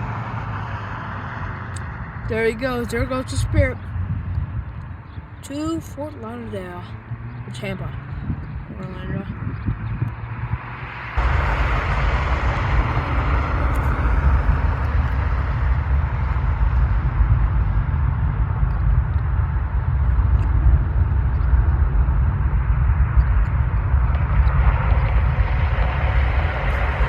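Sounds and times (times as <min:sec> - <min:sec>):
jet engine roar: 0:10.6 - 0:22.2, 0:23.2 - 0:27.0.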